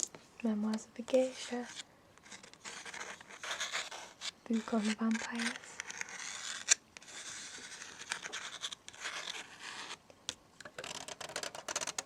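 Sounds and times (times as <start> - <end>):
fingernails scratching a book: 1.1 - 10.0, 10.8 - 12.0.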